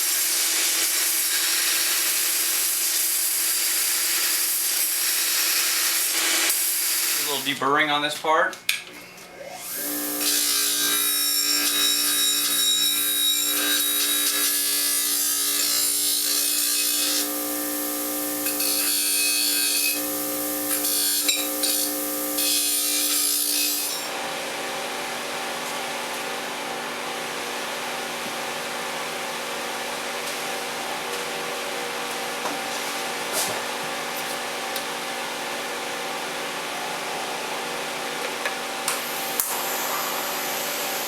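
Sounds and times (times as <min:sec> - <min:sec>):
power tool running: 0:00.0 - 0:07.5, 0:09.3 - 0:24.4, 0:38.8 - 0:41.0.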